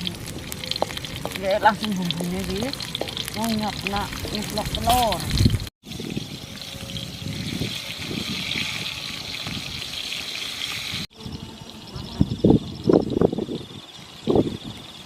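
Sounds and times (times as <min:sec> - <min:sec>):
egg sizzling in oil: 0:00.0 - 0:11.1.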